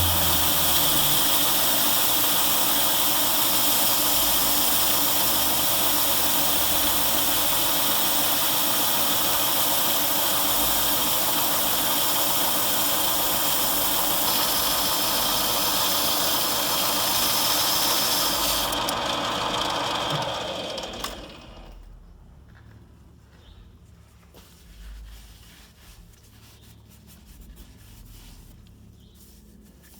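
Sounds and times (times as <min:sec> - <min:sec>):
steel hissing against wheel: 0:00.0 - 0:18.8
abrasive wheel power tool running: 0:00.0 - 0:21.9.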